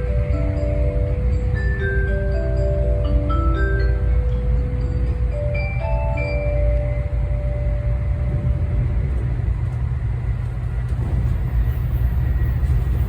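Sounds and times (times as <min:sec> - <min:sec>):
announcement chime: 0:00.0 - 0:08.2
train running low rumble: 0:00.0 - 0:13.0.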